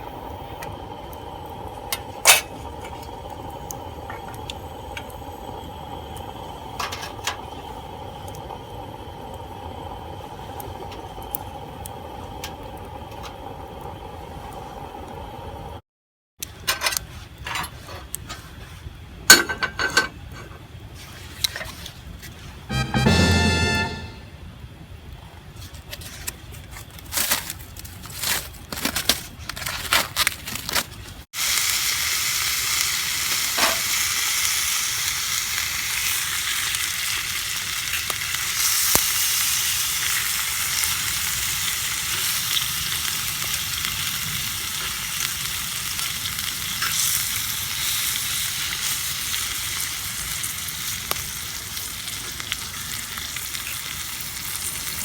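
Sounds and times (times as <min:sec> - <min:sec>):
meat sizzling in a skillet: 0:31.4 - 0:55.0.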